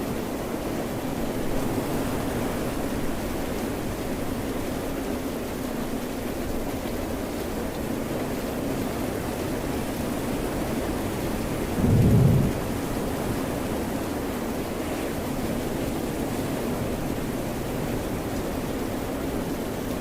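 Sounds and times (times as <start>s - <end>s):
steady rain: 0.0s - 20.0s
loud low rumble: 11.8s - 13.0s.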